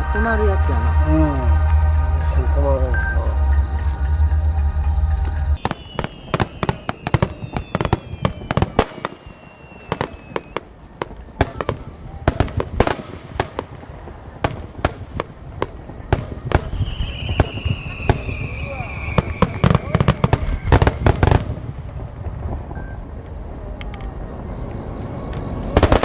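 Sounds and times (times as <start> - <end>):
whistling firework shells: 0.0 - 26.0
fireworks bangs and pops: 5.6 - 23.4, 25.3 - 26.0.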